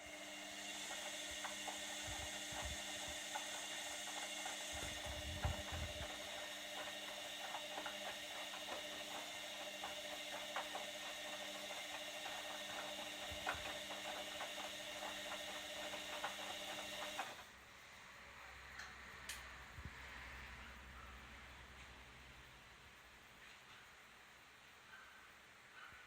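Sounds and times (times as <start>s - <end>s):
washing machine motor whine: 0.0s - 17.5s.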